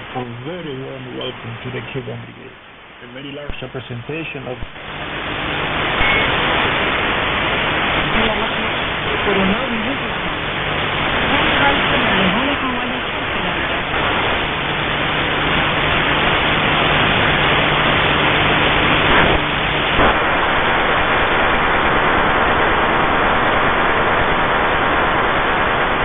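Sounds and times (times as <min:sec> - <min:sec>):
faint low steady tone: 0:00.0 - 0:04.7, 0:05.9 - 0:06.4
radio crackle: 0:00.0 - 0:26.0
radio static hiss: 0:00.0 - 0:26.0.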